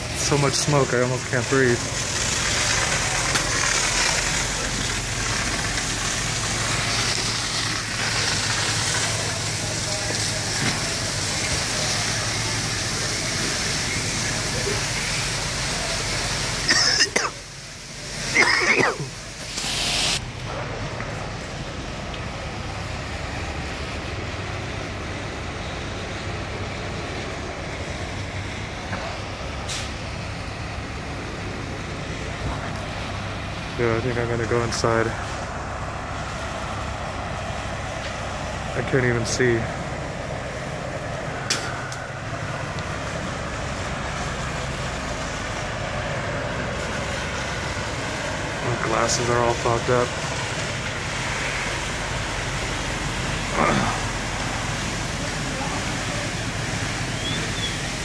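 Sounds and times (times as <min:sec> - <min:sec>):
steady hiss: 0:00.0 - 0:20.2, 0:21.4 - 0:58.0
engine idling: 0:00.0 - 0:58.0
short sharp hiss: 0:18.3 - 0:20.2.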